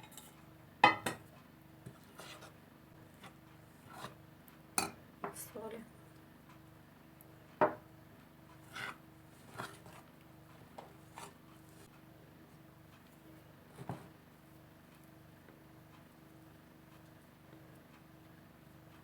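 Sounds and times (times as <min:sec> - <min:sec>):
dough scraping in a bowl: 0:01.8 - 0:04.2, 0:08.6 - 0:10.1, 0:10.7 - 0:11.9.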